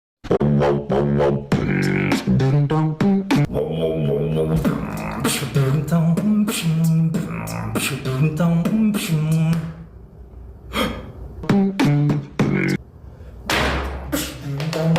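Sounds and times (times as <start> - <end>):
beatboxing drum hits: 0.3 - 3.6, 4.3 - 9.8, 11.4 - 12.8, 13.5 - 14.9.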